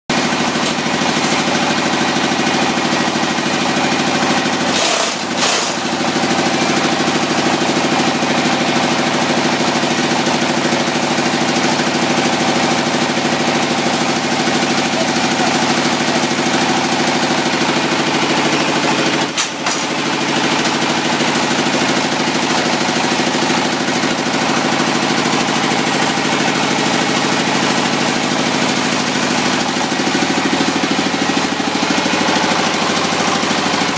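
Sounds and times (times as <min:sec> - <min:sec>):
hydraulic press mechanical drone: 0:18.0 - 0:20.8.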